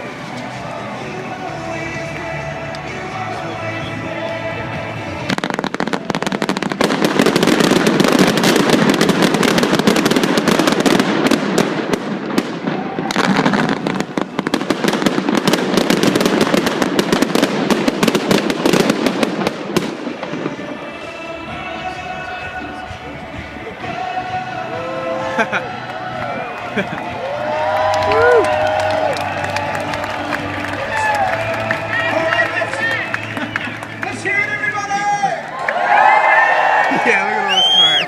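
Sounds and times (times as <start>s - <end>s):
music: 0.0s - 11.0s, 19.8s - 36.5s
fireworks bangs and crackles: 0.0s - 24.7s.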